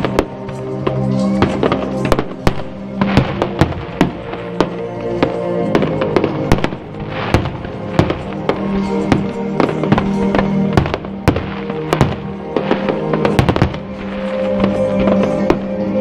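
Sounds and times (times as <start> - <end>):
fireworks bursting with sharp bangs: 0.0 - 16.0
music with long held notes: 0.0 - 16.0.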